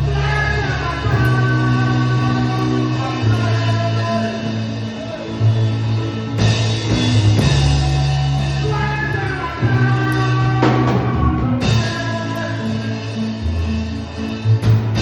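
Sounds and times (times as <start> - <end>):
bass line: 0.0 - 15.0
guitar and keyboard melody: 0.0 - 15.0
drum kit: 6.2 - 13.2, 14.5 - 15.0.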